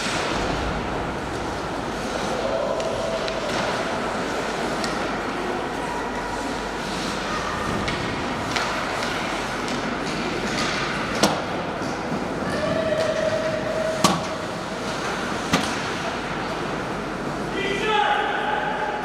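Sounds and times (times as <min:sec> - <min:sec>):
hockey stick hitting puck: 0:02.2 - 0:05.2, 0:07.6 - 0:12.0, 0:12.9 - 0:16.7.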